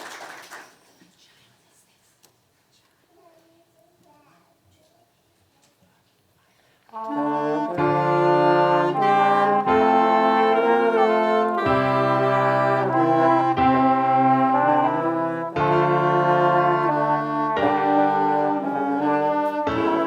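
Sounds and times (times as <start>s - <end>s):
brass music sustained chords: 7.0s - 20.0s.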